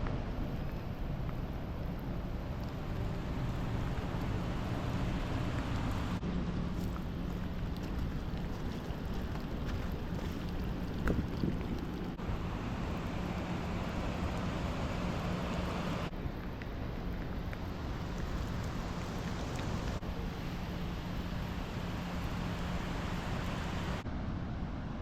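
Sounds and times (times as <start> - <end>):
waterfall rushing: 20.8 - 24.0.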